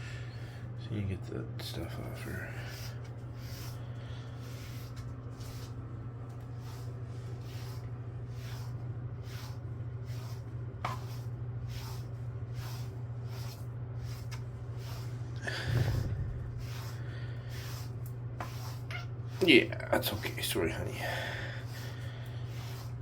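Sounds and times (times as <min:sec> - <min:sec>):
steady low hum: 0:00.0 - 0:23.0
brush rasping through cat fur: 0:01.9 - 0:23.0
louder bump: 0:15.6 - 0:16.6.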